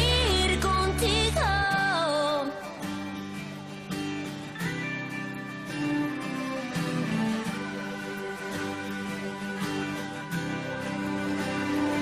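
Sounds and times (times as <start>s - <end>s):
acoustic guitar chords: 0.0s - 12.0s.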